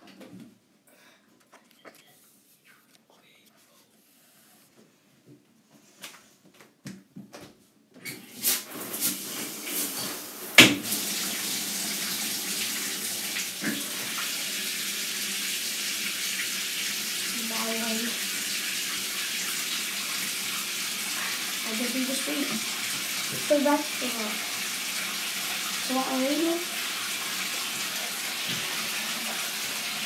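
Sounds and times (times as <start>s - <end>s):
water running into bathtub: 8.0s - 30.0s.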